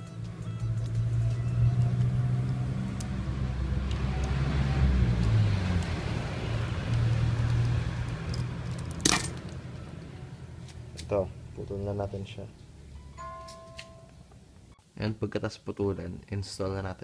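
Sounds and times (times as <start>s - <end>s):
vehicle engine droning: 0.0s - 13.2s.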